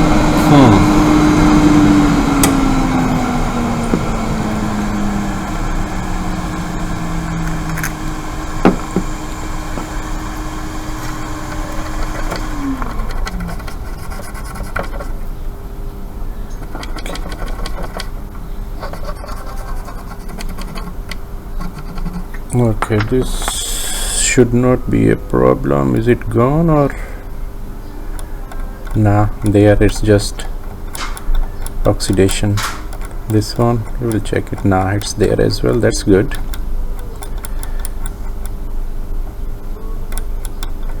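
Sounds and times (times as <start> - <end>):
small electric blower fan running: 0.0 - 41.0
light clicks: 30.9 - 38.6.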